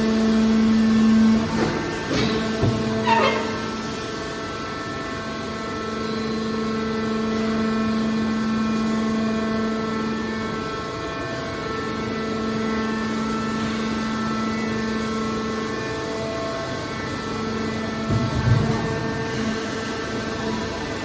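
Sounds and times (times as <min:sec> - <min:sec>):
hydraulic baler motor humming: 0:00.0 - 0:04.8, 0:16.9 - 0:21.0.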